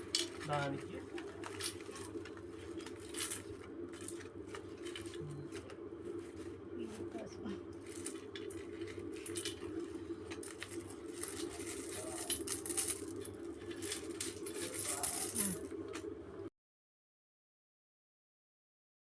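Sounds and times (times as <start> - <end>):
coins clinking: 0.0 - 5.7, 7.8 - 16.0.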